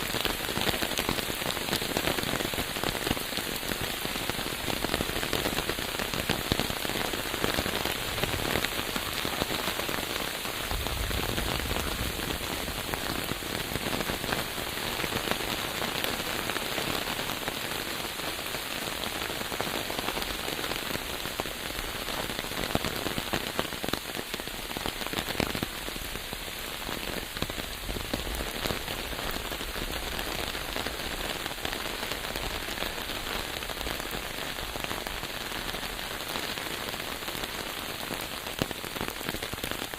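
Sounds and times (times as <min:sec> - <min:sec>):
rain pattering on a surface: 0:00.0 - 0:39.9.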